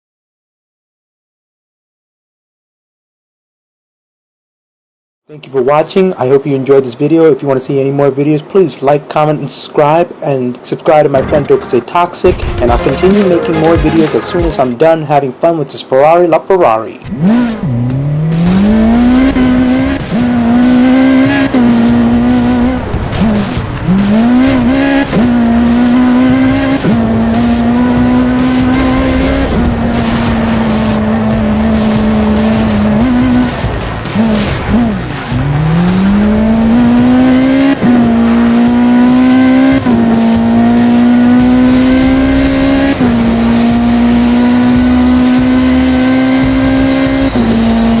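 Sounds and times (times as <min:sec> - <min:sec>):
car engine accelerating through gears: 0:17.1 - 0:48.0.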